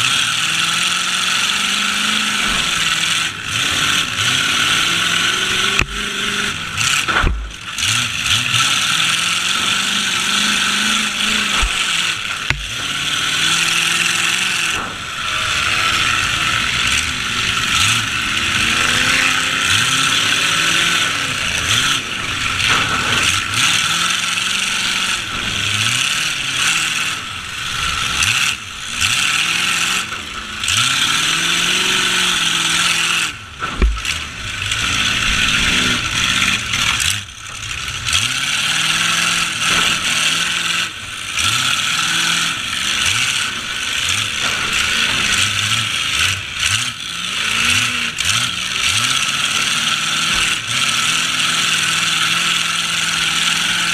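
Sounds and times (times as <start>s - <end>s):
truck engines revving: 0.0s - 53.9s
heavy crash: 9.6s - 30.6s, 31.4s - 46.5s.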